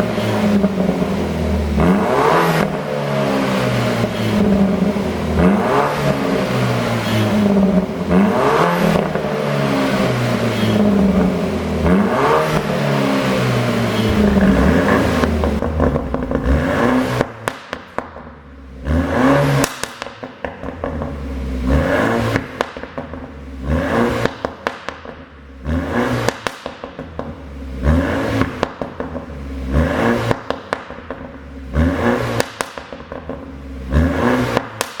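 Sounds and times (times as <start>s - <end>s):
car engine revving: 0.0s - 35.0s
exhaust pops and crackles: 13.9s - 18.6s, 19.3s - 21.3s, 22.2s - 27.6s, 28.3s - 29.4s, 30.1s - 35.0s.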